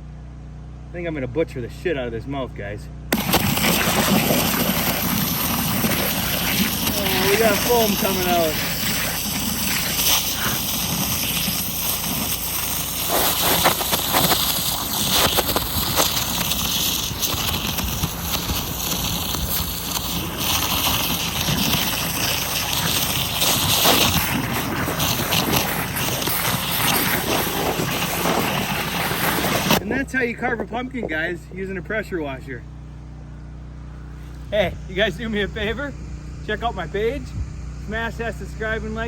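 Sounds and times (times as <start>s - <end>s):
pressure washer running: 3.1s - 31.0s
water jet cutting pumpkin: 3.1s - 31.1s.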